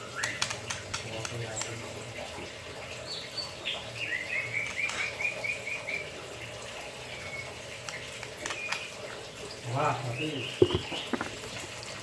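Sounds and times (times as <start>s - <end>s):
bird singing: 3.0s - 6.1s, 9.9s - 11.4s.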